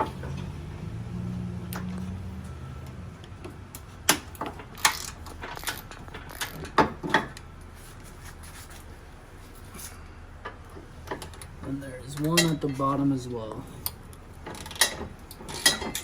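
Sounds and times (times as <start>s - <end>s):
metal parts clinking: 4.8s - 6.8s, 14.5s - 16.0s
rubbing and handling noise: 7.6s - 10.0s.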